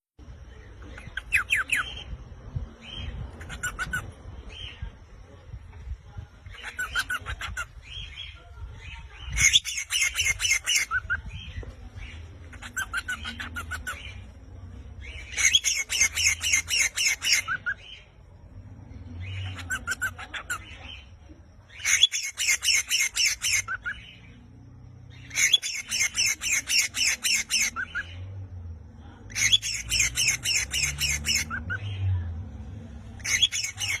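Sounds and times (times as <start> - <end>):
parrots squawking: 0.9 - 2.1, 2.9 - 4.7, 6.5 - 8.2, 9.3 - 11.2, 12.4 - 14.4, 15.1 - 18.1, 19.2 - 24.3, 25.1 - 28.3, 29.3 - 32.0, 33.2 - 34.0
quieter parrot calls: 2.9 - 4.7, 9.3 - 11.2, 12.5 - 14.3, 15.2 - 18.1, 19.2 - 21.1, 21.7 - 24.4, 25.2 - 28.2, 29.3 - 31.8, 33.2 - 34.0.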